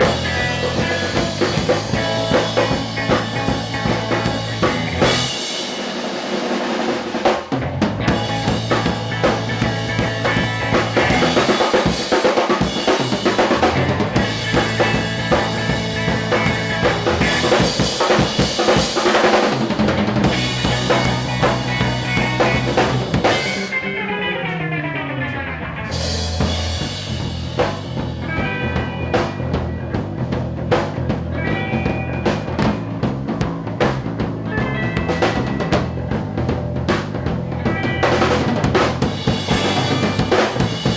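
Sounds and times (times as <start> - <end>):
rock band playing live: 0.0 - 40.9
snare and bass drum: 6.2 - 23.6, 35.0 - 40.9.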